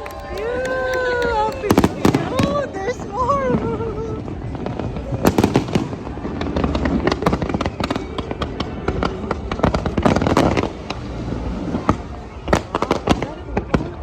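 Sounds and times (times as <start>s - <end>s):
fireworks crackling and popping: 0.0s - 14.0s
sharp firework bangs: 1.5s - 3.0s, 4.5s - 14.0s.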